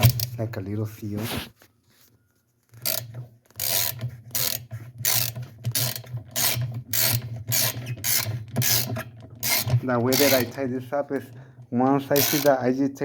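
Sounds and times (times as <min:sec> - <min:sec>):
ratchet wrench clicking: 0:02.8 - 0:10.6, 0:12.1 - 0:12.6.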